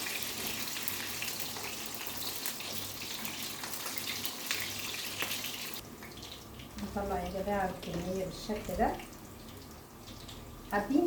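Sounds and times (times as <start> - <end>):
eggplant frying in hot oil: 0.0 - 11.0.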